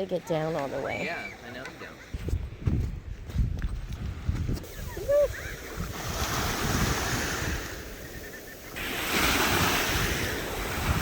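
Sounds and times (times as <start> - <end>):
wind buffeting microphone: 2.0 - 11.0
surf washing on a beach: 4.2 - 11.0.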